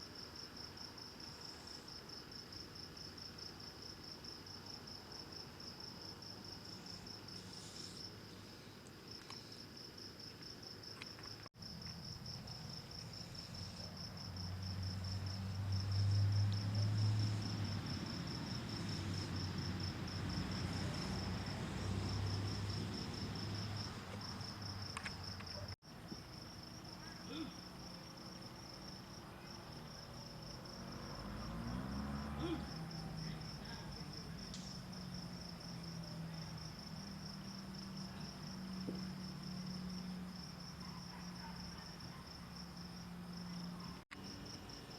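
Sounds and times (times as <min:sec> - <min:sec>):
crickets chirping: 0:00.0 - 0:44.9.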